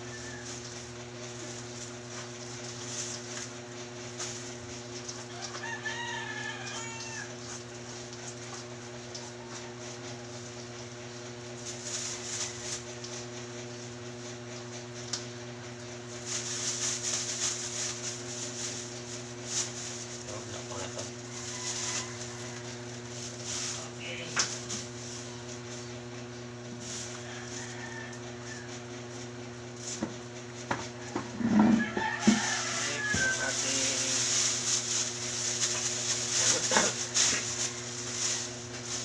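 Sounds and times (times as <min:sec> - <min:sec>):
rooster crowing: 0:00.0 - 0:00.9, 0:05.3 - 0:07.5, 0:20.7 - 0:23.2, 0:27.1 - 0:29.0, 0:31.0 - 0:34.0, 0:36.6 - 0:38.6
steady low hum: 0:07.2 - 0:39.0
rustling: 0:16.2 - 0:25.8, 0:31.3 - 0:39.0.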